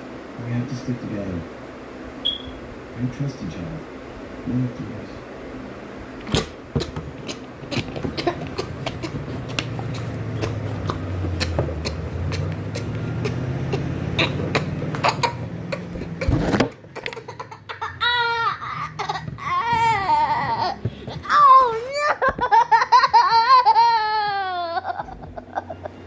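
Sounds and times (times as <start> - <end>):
person coughing: 7.3 - 9.2, 9.8 - 16.4.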